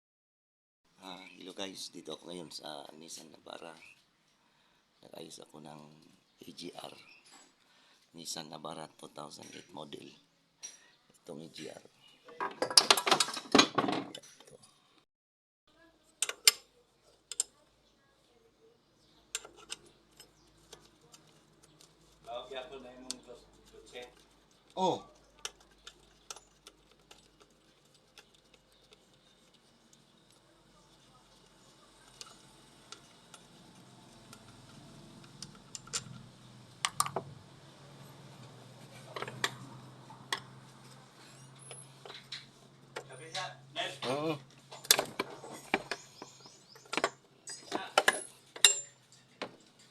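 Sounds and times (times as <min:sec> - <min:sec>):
metallic clicks of tools: 0:16.2 - 0:16.7, 0:19.3 - 0:21.9, 0:34.2 - 0:37.2
hand tools clinking on metal parts: 0:46.8 - 0:49.9.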